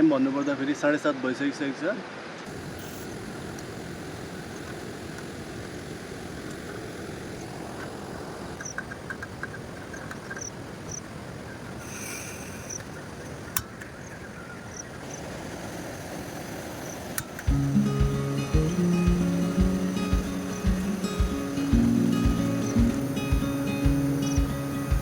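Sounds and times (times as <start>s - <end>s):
river rushing: 0.0s - 25.0s
music: 17.5s - 25.0s.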